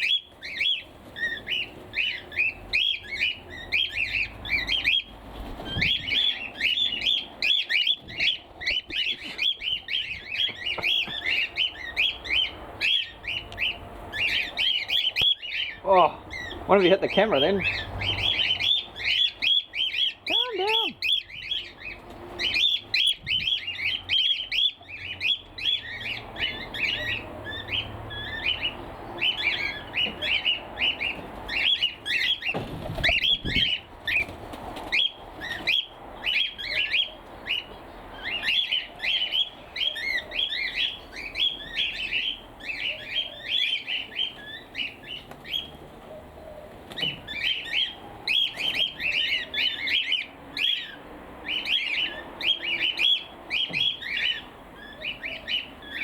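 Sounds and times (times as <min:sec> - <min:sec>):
cockatiels squawking and chirping: 0:00.0 - 0:46.2, 0:46.9 - 0:56.0
wing flaps: 0:32.5 - 0:35.0.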